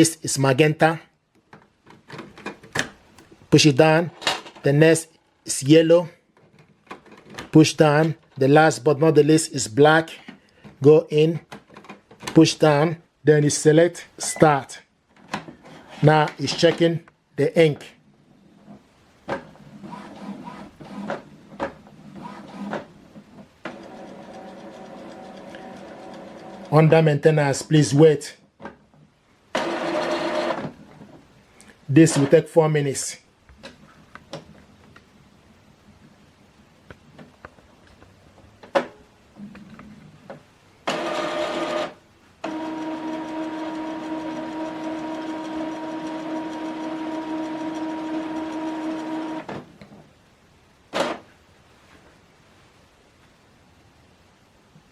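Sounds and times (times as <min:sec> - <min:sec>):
printer motor whirring: 0:23.6 - 0:26.7, 0:29.5 - 0:30.7, 0:40.8 - 0:49.6
printer mechanism clicks and clunks: 0:29.6 - 0:30.8, 0:40.9 - 0:49.6, 0:50.9 - 0:51.2.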